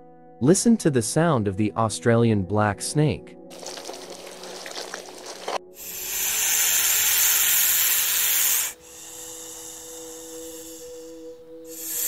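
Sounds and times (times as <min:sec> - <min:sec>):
snake hissing: 0:03.5 - 0:12.0.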